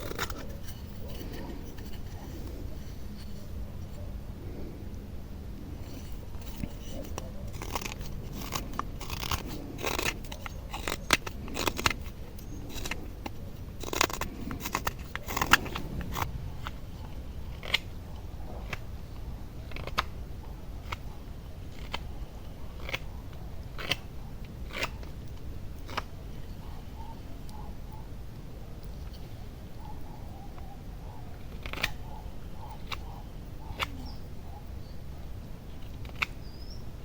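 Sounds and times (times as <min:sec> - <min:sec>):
knife carving wood: 0:00.0 - 0:04.1, 0:05.6 - 0:26.5, 0:31.4 - 0:34.2, 0:35.7 - 0:36.7.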